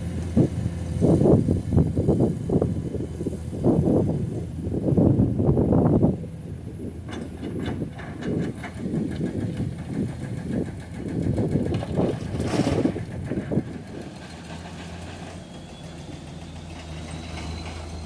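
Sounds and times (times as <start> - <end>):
excavator diesel engine running: 0.0 - 18.0
clunks and rattles: 7.0 - 18.0.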